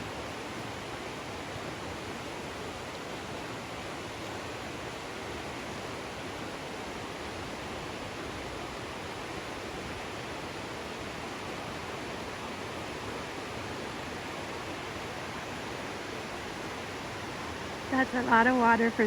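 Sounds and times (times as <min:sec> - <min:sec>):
creek rushing: 0:00.1 - 0:19.0.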